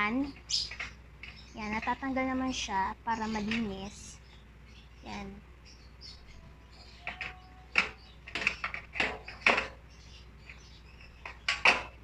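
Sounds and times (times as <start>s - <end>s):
grill parts clacking and knocking: 6.4s - 12.0s.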